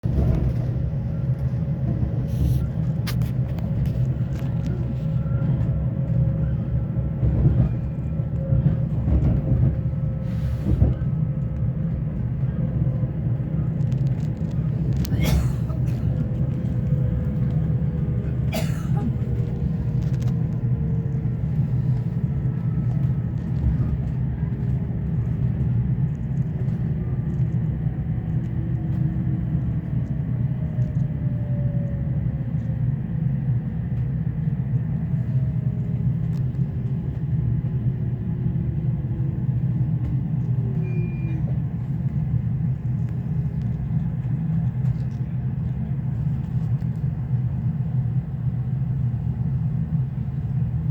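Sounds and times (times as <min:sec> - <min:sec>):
train rumble: 0:00.0 - 0:50.9.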